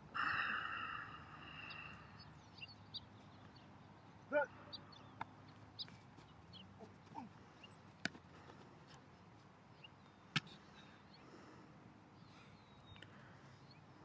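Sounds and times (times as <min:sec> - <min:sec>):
bird chirps: 0:00.3 - 0:06.8.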